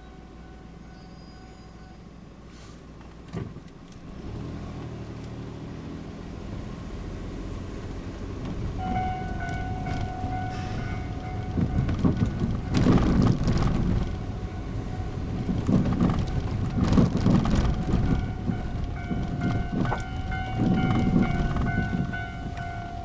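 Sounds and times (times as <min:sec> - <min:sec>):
level-crossing warning bell: 0:00.0 - 0:02.2, 0:08.8 - 0:13.2, 0:13.8 - 0:15.6, 0:16.2 - 0:23.0
train rumbling past on rails: 0:07.5 - 0:23.0.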